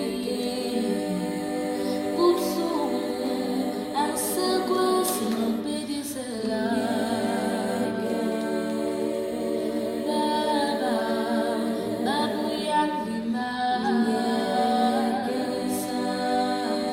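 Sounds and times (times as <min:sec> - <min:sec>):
a cappella group singing in harmony: 0:00.0 - 0:16.9.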